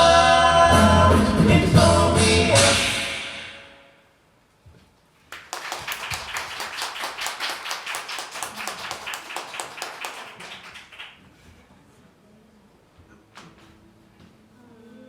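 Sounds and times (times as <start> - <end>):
audience clapping: 5.3 - 11.3.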